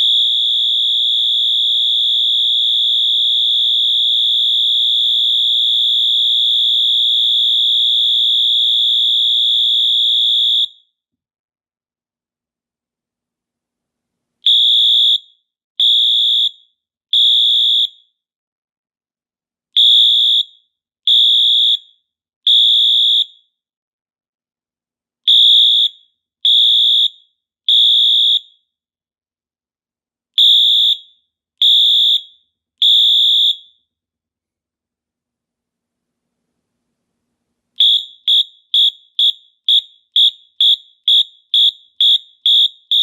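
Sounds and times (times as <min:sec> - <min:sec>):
fire alarm horn blasts: 0:00.0 - 0:10.8, 0:14.5 - 0:16.6, 0:17.2 - 0:18.0, 0:19.8 - 0:20.5, 0:21.1 - 0:21.8, 0:22.5 - 0:23.3, 0:26.5 - 0:28.5, 0:30.4 - 0:33.7, 0:37.8 - 0:43.0.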